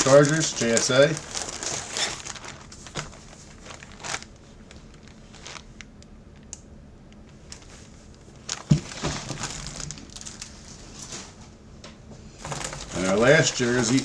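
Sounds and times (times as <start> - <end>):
packaging crinkling: 0.0 - 6.6, 7.3 - 11.4, 12.3 - 14.0.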